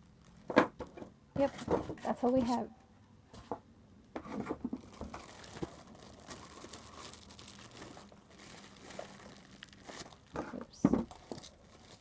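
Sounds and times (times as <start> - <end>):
plastic packaging crinkling: 0.0 - 0.9, 4.6 - 12.0.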